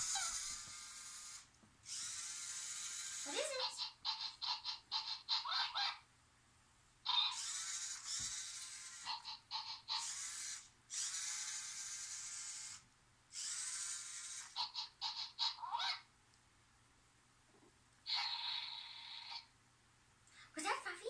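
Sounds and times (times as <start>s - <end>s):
small geared motors whirring: 0.0s - 5.2s, 7.1s - 16.0s.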